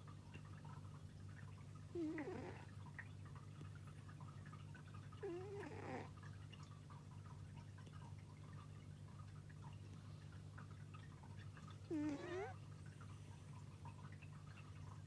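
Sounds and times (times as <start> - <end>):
pet snoring: 2.0 - 2.7, 5.2 - 6.2, 11.9 - 12.6.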